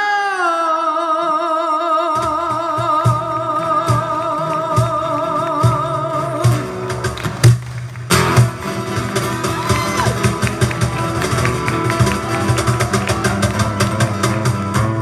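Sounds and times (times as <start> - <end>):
person singing with vibrato: 0.0 - 7.1.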